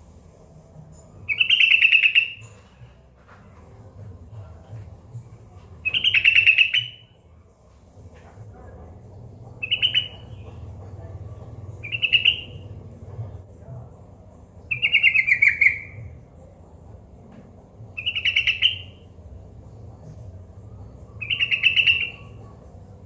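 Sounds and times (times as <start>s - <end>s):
low background hum: 0.0s - 23.0s
bird chattering calls: 1.3s - 2.4s, 5.9s - 7.0s, 9.6s - 10.5s, 11.8s - 12.6s, 14.7s - 16.0s, 18.0s - 19.0s, 21.2s - 22.4s.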